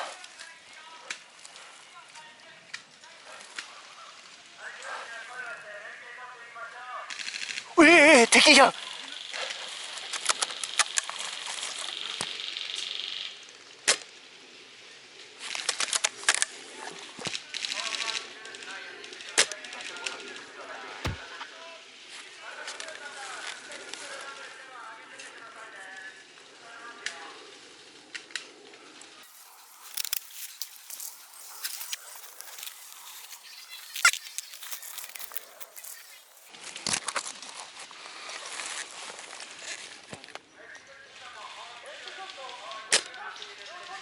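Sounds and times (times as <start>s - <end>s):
dry leaves and twigs rustling: 29.2s - 36.8s.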